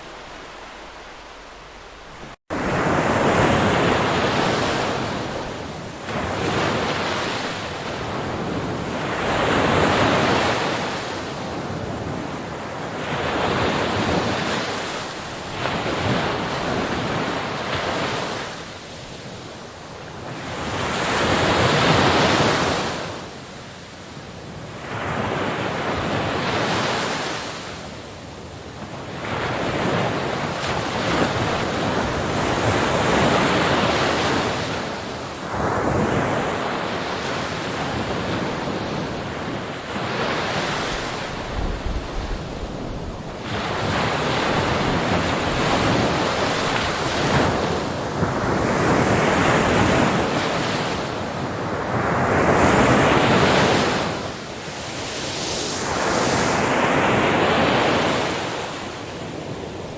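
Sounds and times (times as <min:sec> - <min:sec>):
ocean waves breaking: 0:00.0 - 0:23.6, 0:28.5 - 0:59.9.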